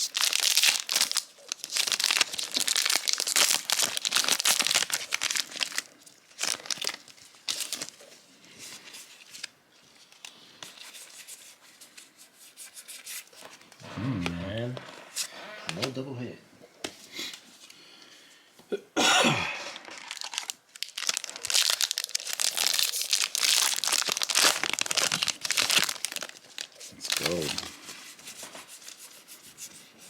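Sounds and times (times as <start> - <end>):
foil wrapper crinkling and tearing: 0.0 - 11.5, 19.5 - 29.0.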